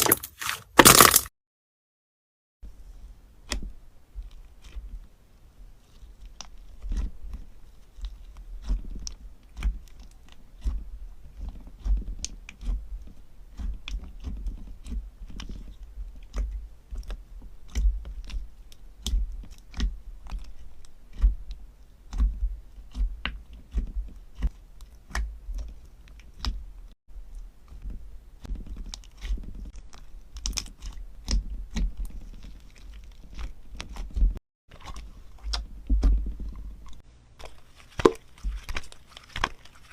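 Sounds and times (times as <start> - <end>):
hands squishing slime: 5.8 - 26.7, 27.6 - 39.9.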